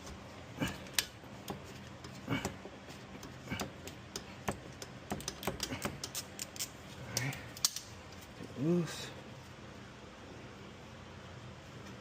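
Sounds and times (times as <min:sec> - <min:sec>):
metallic clicks and taps of tools: 0:03.2 - 0:07.9.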